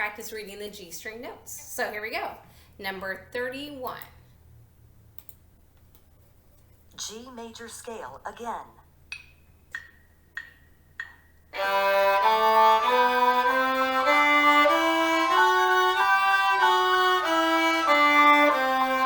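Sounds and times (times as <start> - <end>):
viola bowing a scale: 11.6 - 19.0.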